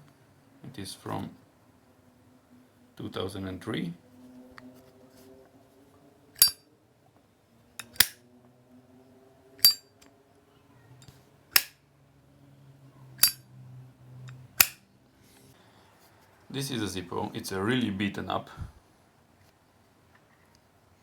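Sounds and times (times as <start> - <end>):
lighter lid clicking open and shut: 7.8 - 8.2, 9.6 - 9.8, 11.5 - 11.8, 13.2 - 13.4, 14.6 - 14.8.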